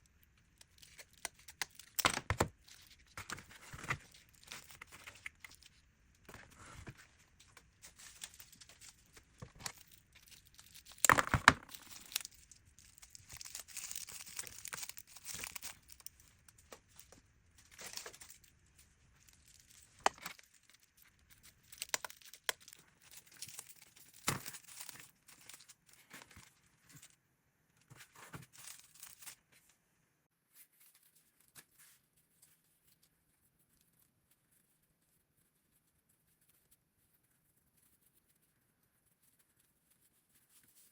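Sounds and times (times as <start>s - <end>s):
craft material rustling and tearing: 0.6s - 27.2s, 27.9s - 29.6s.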